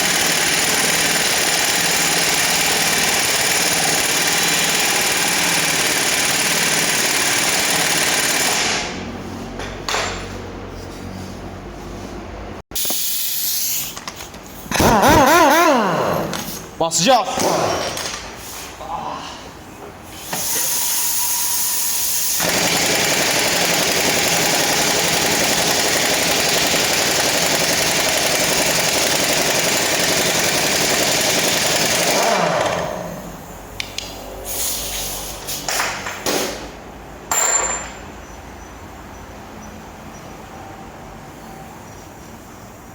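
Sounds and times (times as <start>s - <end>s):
pneumatic impact tool hammering: 0.0s - 9.0s, 12.8s - 16.7s, 20.2s - 38.0s.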